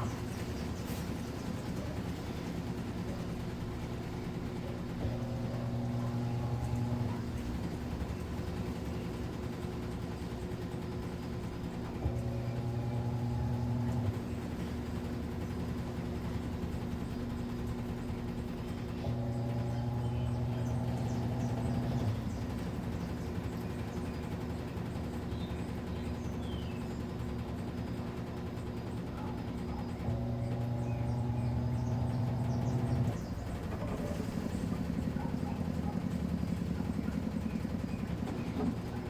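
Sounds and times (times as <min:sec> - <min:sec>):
washing machine humming: 0:00.0 - 0:39.0
motor surging with a whine: 0:05.0 - 0:07.4, 0:12.0 - 0:14.4, 0:19.0 - 0:22.5, 0:29.9 - 0:39.0.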